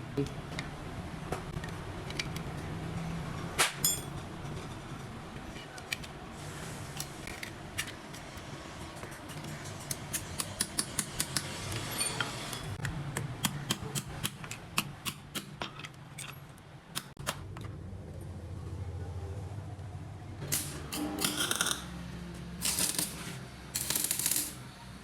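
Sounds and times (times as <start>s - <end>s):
small metal parts clicking: 20.5s - 21.9s, 22.6s - 24.7s.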